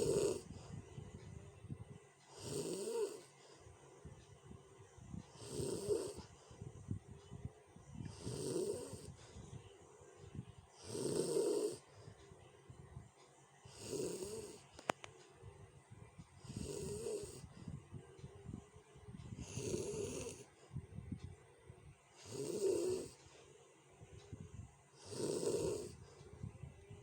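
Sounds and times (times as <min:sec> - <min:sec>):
person snoring coarsely: 0:00.0 - 0:00.5, 0:02.3 - 0:03.3, 0:05.4 - 0:06.3, 0:08.0 - 0:09.2, 0:10.8 - 0:11.8, 0:13.7 - 0:14.6, 0:16.4 - 0:17.4, 0:19.4 - 0:20.5, 0:22.2 - 0:23.2, 0:25.0 - 0:26.0
rattling breaths: 0:02.2 - 0:21.4.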